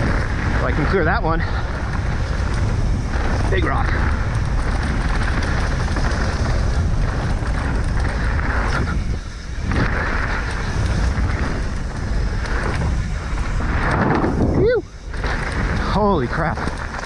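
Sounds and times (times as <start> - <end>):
mountain bike rattling on trail: 0.0 - 17.0
wind on microphone: 0.0 - 17.0.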